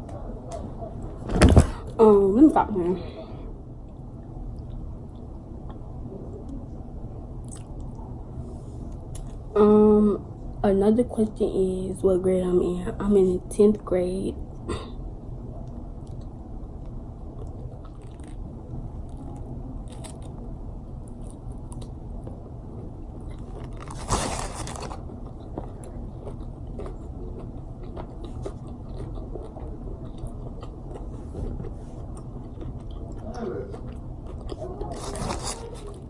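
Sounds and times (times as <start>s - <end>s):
person chewing crispy food: 7.4s - 8.0s, 16.0s - 36.0s.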